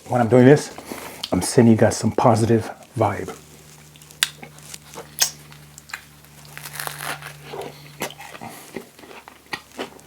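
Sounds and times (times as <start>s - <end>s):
soft crunching: 3.2s - 10.0s
chewing with wet mouth smacks: 7.4s - 10.0s.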